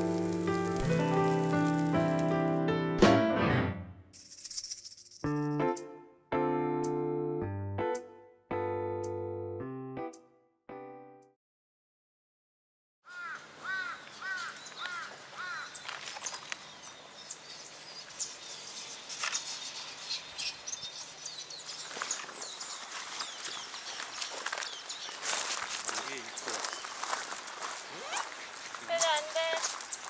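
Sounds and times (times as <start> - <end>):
bird calls: 13.1 - 30.0
faint chirps and clicks: 14.3 - 15.0, 15.7 - 17.4.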